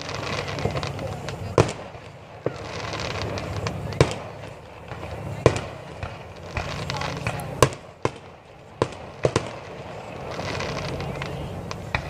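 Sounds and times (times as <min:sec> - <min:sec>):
fireworks bangs: 0:00.0 - 0:12.0
fireworks crackling: 0:00.0 - 0:12.0.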